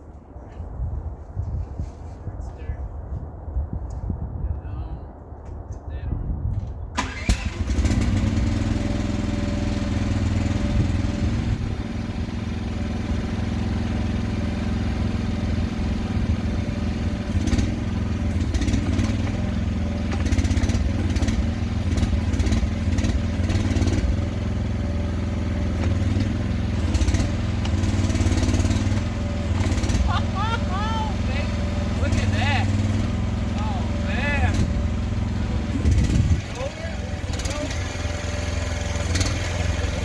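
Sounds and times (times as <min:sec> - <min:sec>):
mini excavator engine running: 0:07.0 - 0:40.0.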